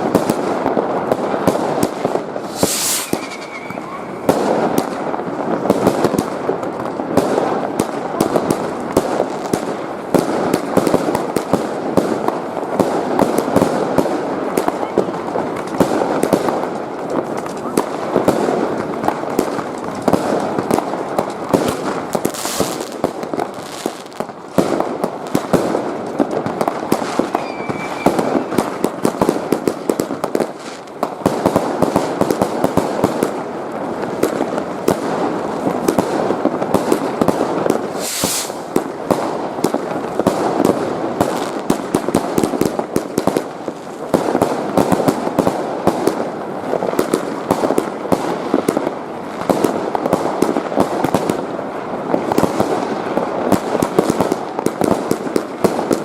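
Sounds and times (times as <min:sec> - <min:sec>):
fireworks bangs and cracks: 0:00.0 - 0:56.0
hissing flares: 0:02.1 - 0:06.4, 0:37.0 - 0:39.8.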